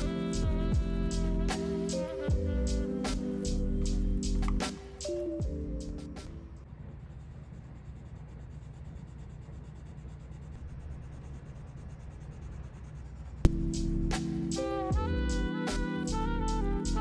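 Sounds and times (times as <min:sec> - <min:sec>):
pencil scratching on paper: 0:06.6 - 0:15.0.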